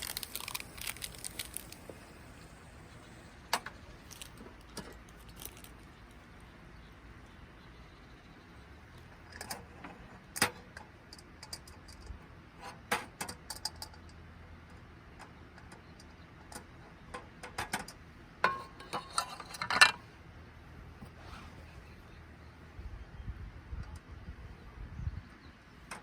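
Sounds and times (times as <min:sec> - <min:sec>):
small hard objects clinking: 0:00.0 - 0:03.2, 0:04.0 - 0:06.1.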